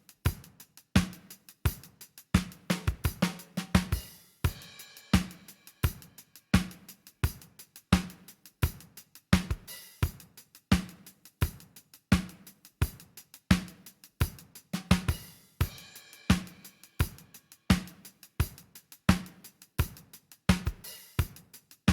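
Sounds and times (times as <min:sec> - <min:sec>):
drum kit beat: 0:00.0 - 0:21.9
hi-hat ticks: 0:00.0 - 0:21.9.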